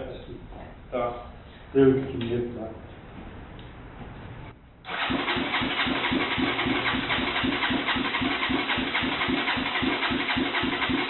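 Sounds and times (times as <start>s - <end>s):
electric starter cranking engine: 4.9s - 11.0s.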